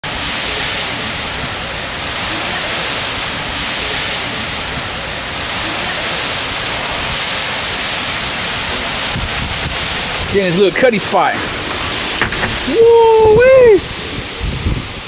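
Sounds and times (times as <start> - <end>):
heavy rain: 0.0 - 15.0
hurricane winds: 0.0 - 15.0.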